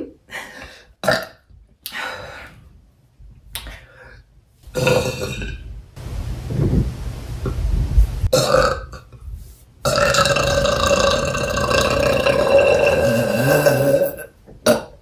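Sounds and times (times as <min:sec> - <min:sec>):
woman burping: 0:01.0 - 0:01.4, 0:08.3 - 0:09.2, 0:09.9 - 0:15.0.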